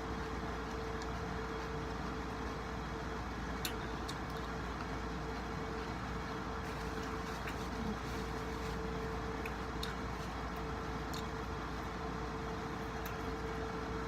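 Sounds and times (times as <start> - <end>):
background hum and hiss: 0.0 - 14.0
faint eating clicks: 3.6 - 5.0, 9.3 - 11.9, 12.9 - 13.6.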